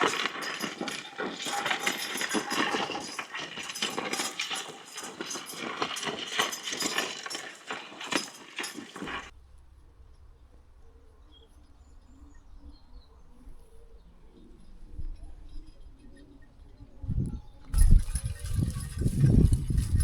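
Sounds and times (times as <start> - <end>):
harness rattling: 0.0 - 9.3, 17.8 - 20.0
horse hooves clattering: 0.0 - 9.4, 17.7 - 20.0.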